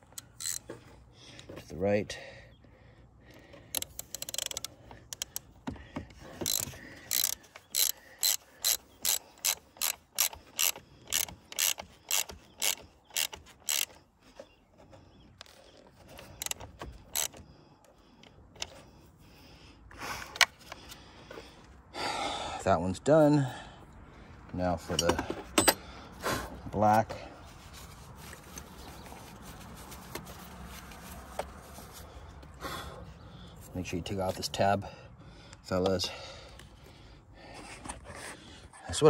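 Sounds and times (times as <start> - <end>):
ratchet wrench clicking: 0.0 - 0.7, 3.7 - 5.5, 6.3 - 14.0, 16.2 - 17.4.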